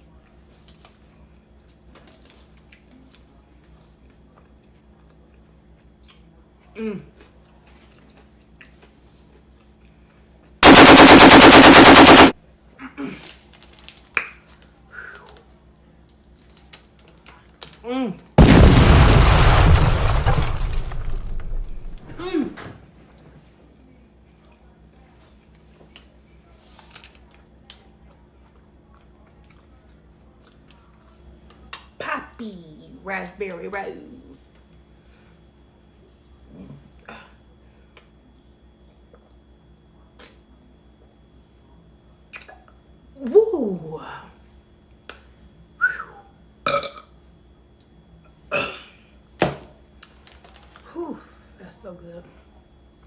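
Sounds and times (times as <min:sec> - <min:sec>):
low steady hum: 0:18.4 - 0:22.6
wet mouth smacks: 0:40.2 - 0:40.4, 0:42.3 - 0:42.7.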